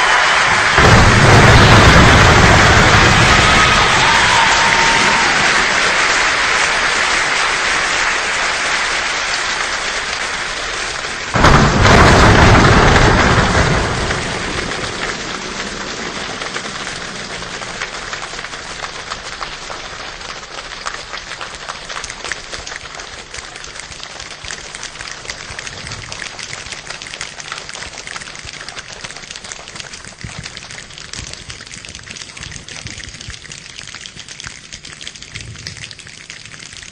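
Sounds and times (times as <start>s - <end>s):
thunder clap rumbling: 0.0s - 6.8s, 11.2s - 19.0s
steady rain: 0.0s - 36.9s.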